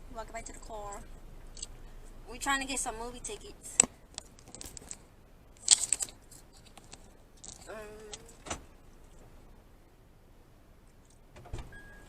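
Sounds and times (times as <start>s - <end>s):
rustling and clicking handling noises: 3.6s - 9.3s
person humming: 7.7s - 8.4s.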